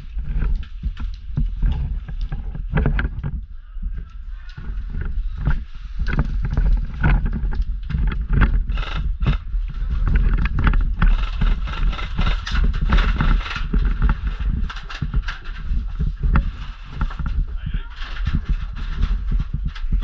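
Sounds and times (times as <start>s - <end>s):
microphone handling noise: 0.0s - 20.0s
wind rumbling on microphone: 0.0s - 20.0s
knocks and rustling: 4.6s - 20.0s.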